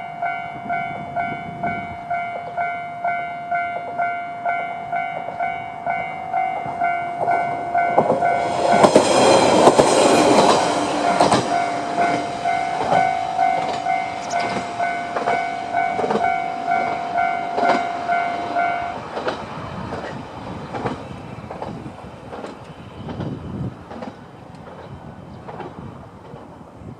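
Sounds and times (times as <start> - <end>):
level crossing alarm ringing: 0.0 - 19.2
train wheels clacking: 0.0 - 26.6
train rushing past: 0.0 - 26.9.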